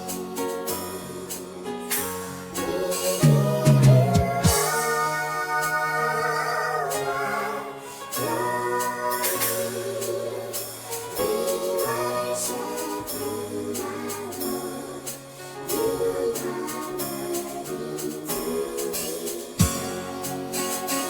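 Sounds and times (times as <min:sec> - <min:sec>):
choir singing: 0:00.0 - 0:21.0
band with bass line: 0:03.2 - 0:04.7.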